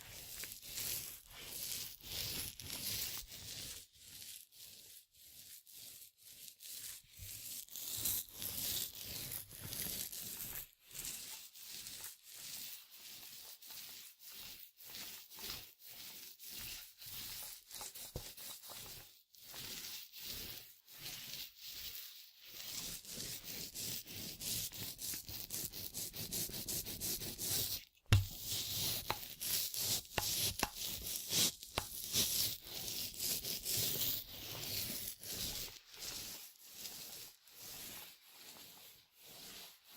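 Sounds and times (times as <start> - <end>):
paint roller rubbing surface: 0.0 - 39.9
sharp knock: 28.1 - 28.4.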